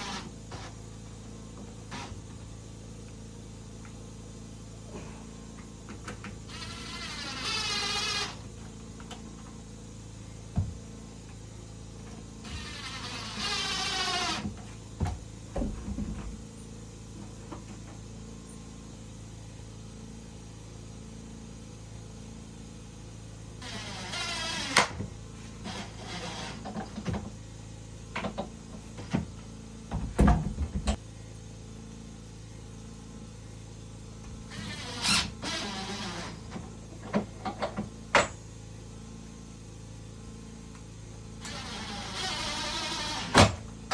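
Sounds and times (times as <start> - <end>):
small electric motor whining: 0.0 - 0.8, 6.4 - 8.7, 12.4 - 14.7, 23.6 - 26.9, 34.5 - 36.5, 41.4 - 43.6
knocks and clatter: 29.9 - 31.0.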